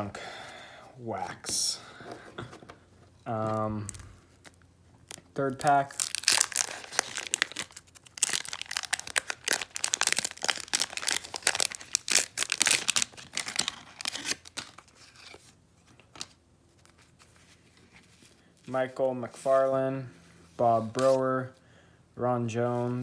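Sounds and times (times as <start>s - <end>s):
faint handling sounds: 1.1s - 12.2s, 13.5s - 21.6s
wax-paper wrapper tearing and crinkling: 3.4s - 17.3s.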